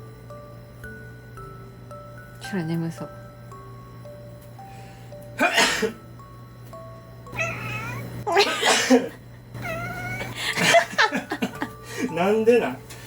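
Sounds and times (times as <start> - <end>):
soft music with bell-like notes: 0.0 - 8.3, 9.8 - 13.0
person sneezing: 5.4 - 6.0, 8.4 - 9.1
cat meowing: 7.4 - 8.1, 9.6 - 10.4.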